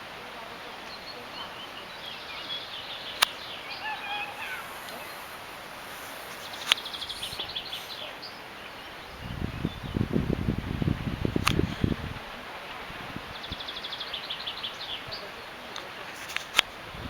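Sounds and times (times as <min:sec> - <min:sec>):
steady background hiss: 0:00.0 - 0:17.0
birds chirping and trilling: 0:00.9 - 0:10.0
sharp clicks: 0:03.1 - 0:08.3, 0:11.4 - 0:11.8, 0:15.8 - 0:16.8.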